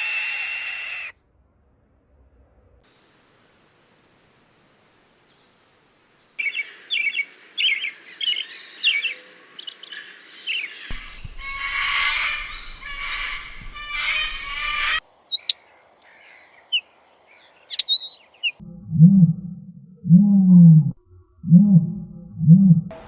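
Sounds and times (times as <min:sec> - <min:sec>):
birds chirping: 0:02.9 - 0:20.8
bird calling sharp repeated notes: 0:10.9 - 0:15.7
low rumble: 0:18.6 - 0:23.0.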